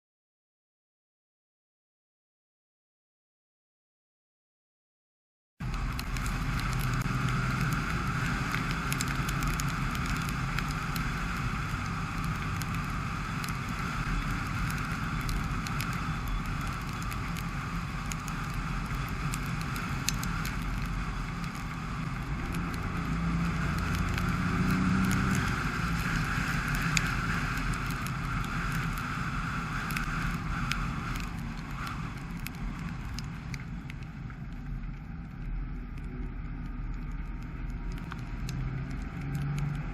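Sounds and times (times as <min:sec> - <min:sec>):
car engine hum: 0:05.6 - 0:39.9
small ticks: 0:05.6 - 0:39.9
tyre hiss on wet road: 0:05.7 - 0:33.8.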